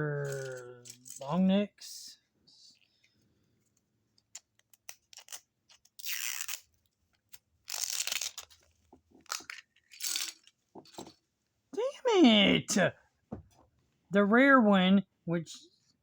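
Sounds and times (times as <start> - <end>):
packaging tearing rips: 4.4 - 8.6, 9.2 - 10.5.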